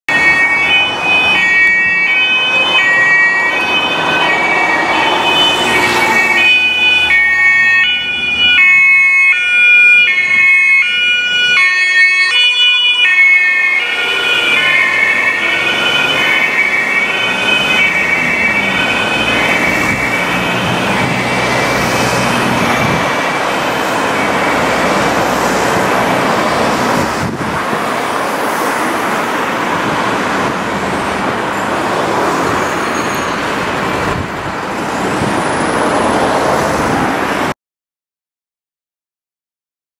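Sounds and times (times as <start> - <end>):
two-tone police siren: 0.1 - 27.4
vehicle and road noise: 0.1 - 37.6.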